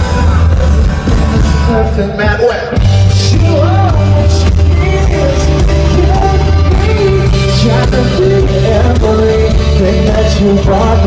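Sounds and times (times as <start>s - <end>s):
bass line: 0.0s - 11.0s
person singing: 0.0s - 11.0s.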